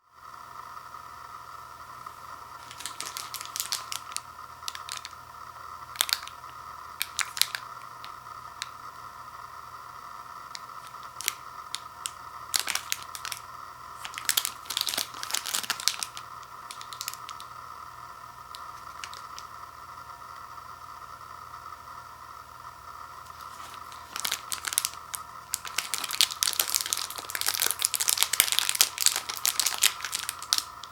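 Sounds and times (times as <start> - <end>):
steady background hum: 0.0 - 30.9
plastic wrapper crinkling and tearing: 2.6 - 5.2, 5.9 - 8.7, 10.6 - 17.5, 18.5 - 19.5, 23.3 - 30.9.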